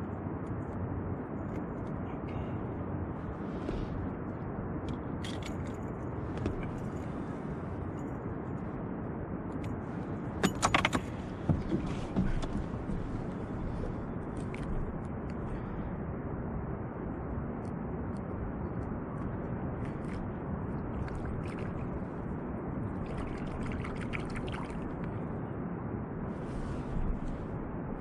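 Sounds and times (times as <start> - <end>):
sharp clicks and rattles: 10.4 - 11.2.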